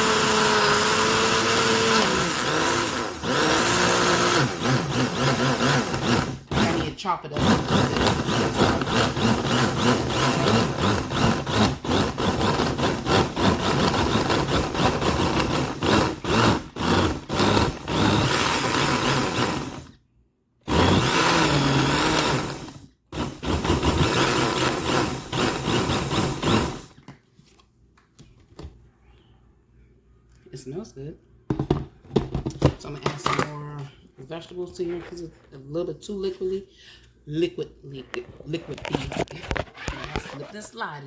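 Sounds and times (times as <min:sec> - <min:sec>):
blender chopping vegetables: 0:00.0 - 0:20.0, 0:20.7 - 0:27.0, 0:39.1 - 0:40.6.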